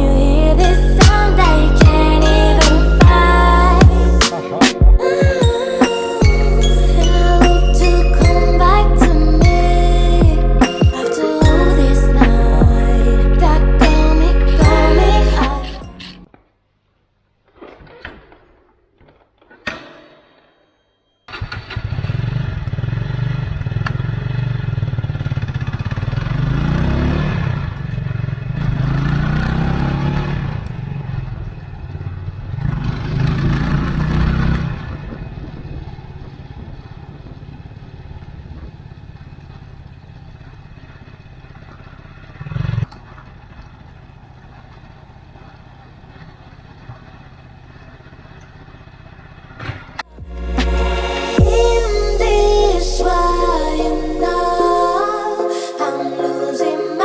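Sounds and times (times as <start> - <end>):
motorcycle engine revving and idling: 21.4 - 50.0.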